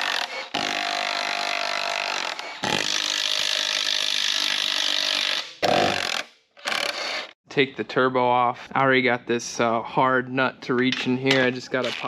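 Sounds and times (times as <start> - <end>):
power tool removing bolts: 0.0 - 7.3.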